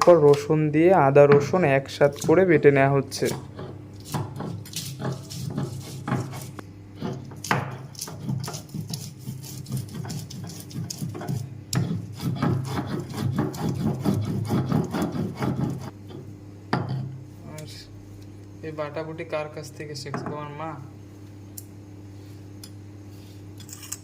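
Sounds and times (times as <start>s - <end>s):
grinding stone scraping: 4.4s - 7.2s, 8.1s - 16.0s.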